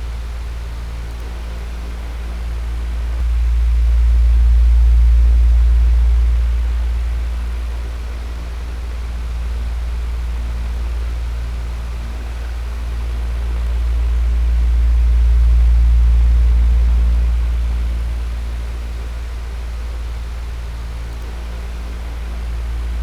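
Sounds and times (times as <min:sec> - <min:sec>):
electric fan running: 0:00.0 - 0:23.0.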